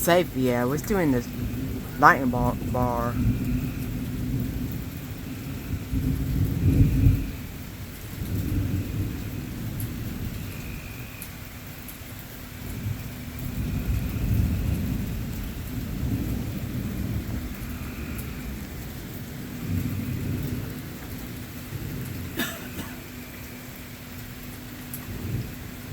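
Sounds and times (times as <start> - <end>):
thunder rumbling: 0.0 - 10.8, 12.6 - 22.4
heavy rain: 0.0 - 25.9.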